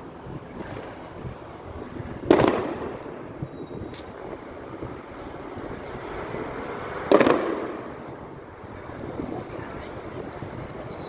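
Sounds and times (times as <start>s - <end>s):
wind noise: 0.0s - 11.0s
firework bang with echo: 2.3s - 2.8s, 7.1s - 7.8s.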